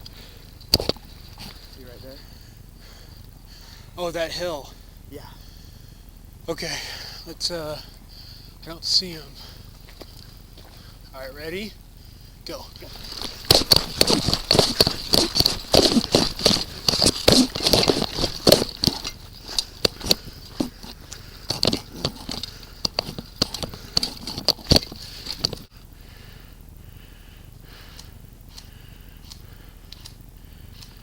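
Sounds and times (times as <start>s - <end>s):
footsteps on dry leaves: 11.8s - 25.7s
faint clicks: 27.6s - 31.0s.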